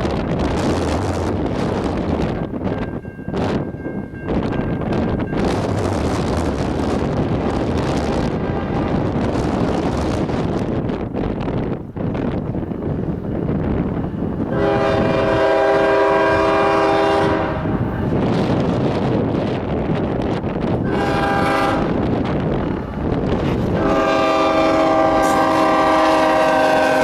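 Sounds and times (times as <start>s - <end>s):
freight train rumbling past: 0.0s - 27.0s
wind buffeting microphone: 0.0s - 27.0s
locomotive air horn blast: 14.5s - 17.9s, 20.8s - 22.1s, 23.7s - 27.0s.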